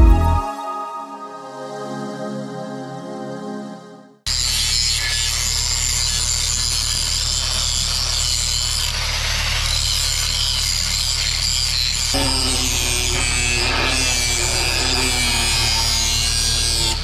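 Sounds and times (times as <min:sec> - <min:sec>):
power tool hissing with low hum: 0:11.8 - 0:17.0.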